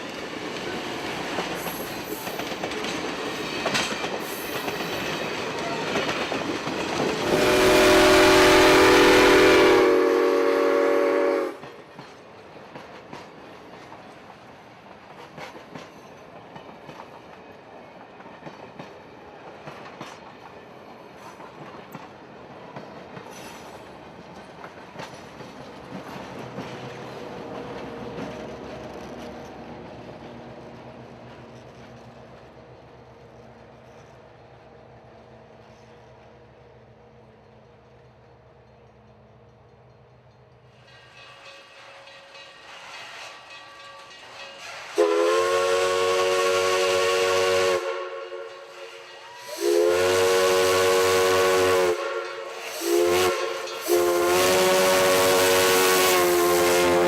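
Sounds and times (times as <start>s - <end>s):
train wheel clicks: 0.0s - 7.4s, 11.6s - 32.6s, 37.0s - 45.1s, 52.2s - 54.2s
train rumbling: 0.0s - 57.0s
steam locomotive whistle: 7.2s - 11.8s, 44.6s - 57.0s.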